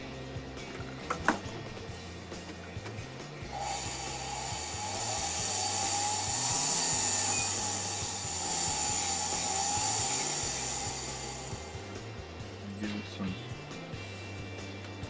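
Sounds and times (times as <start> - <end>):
background music: 0.0 - 15.0
rotary tool grinding whine: 3.2 - 12.7.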